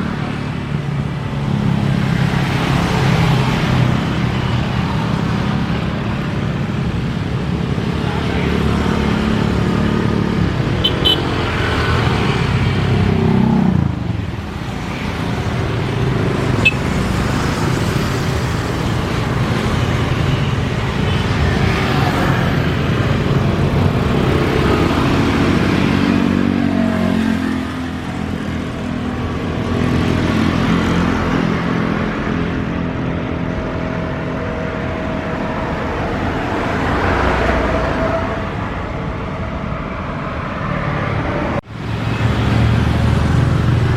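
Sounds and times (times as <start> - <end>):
background traffic noise: 0.0 - 43.9
cars passing: 0.0 - 43.9
motorcycles passing: 0.0 - 43.9.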